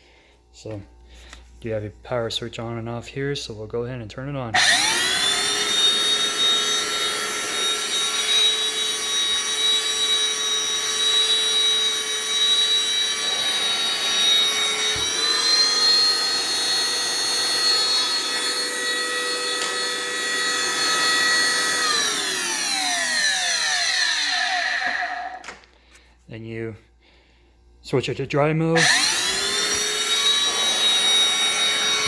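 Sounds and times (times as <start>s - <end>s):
floor cleaner motor whining: 4.6s - 25.7s, 28.8s - 32.0s.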